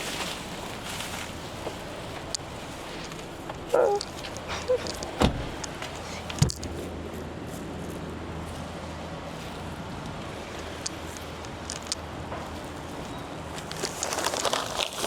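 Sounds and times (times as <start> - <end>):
clunks and knocks in a car: 5.0 - 5.7, 6.3 - 6.8.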